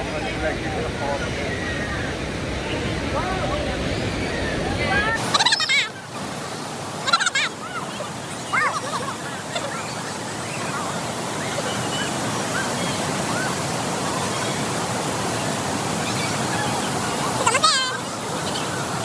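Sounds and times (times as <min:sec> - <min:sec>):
waterfall rushing: 0:02.9 - 0:19.0.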